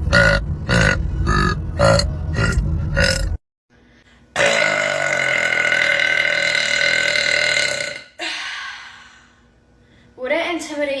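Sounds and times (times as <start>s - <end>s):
woman burping: 4.4s - 8.4s.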